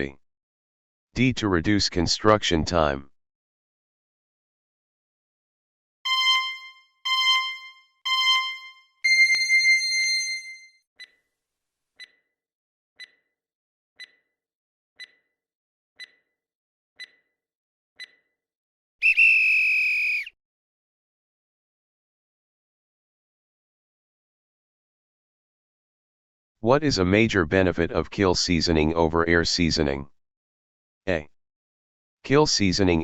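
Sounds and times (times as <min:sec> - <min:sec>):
timer ticking: 0:06.1 - 0:09.5, 0:12.0 - 0:12.2, 0:13.0 - 0:13.3, 0:14.0 - 0:14.3, 0:15.0 - 0:15.2, 0:16.0 - 0:16.3, 0:17.0 - 0:17.2, 0:18.0 - 0:18.2
electronic alarm tone: 0:06.1 - 0:10.7
short electronic beeps: 0:06.1 - 0:11.1.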